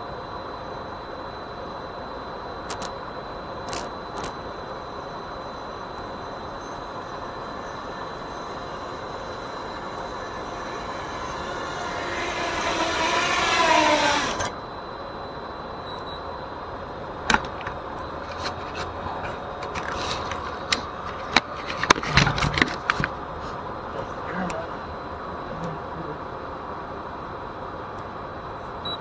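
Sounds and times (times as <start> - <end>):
drone motors whining: 5.5 - 14.8.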